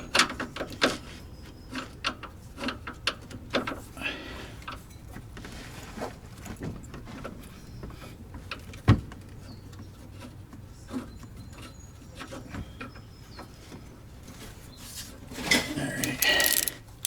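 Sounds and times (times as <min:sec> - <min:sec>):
metallic clicks of hand tools: 0:16.0 - 0:16.9.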